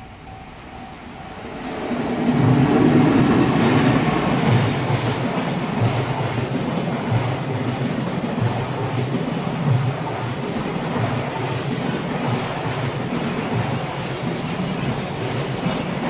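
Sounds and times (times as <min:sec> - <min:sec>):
electric train passing: 0:00.0 - 0:16.0.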